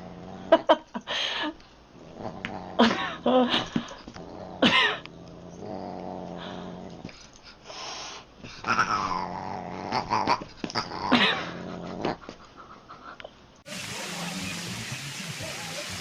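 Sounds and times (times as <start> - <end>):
animal growling low: 2.0 - 3.3, 4.1 - 7.1, 8.6 - 12.2.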